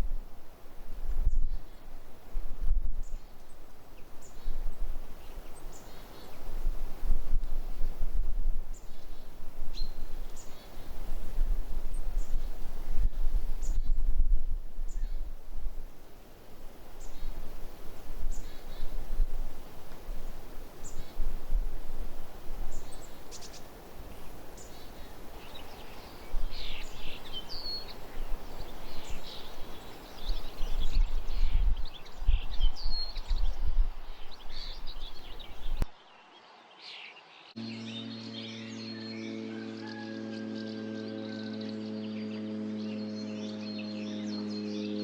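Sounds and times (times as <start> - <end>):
wind rumbling on microphone: 0.0 - 35.9
bird chirps: 24.6 - 45.0.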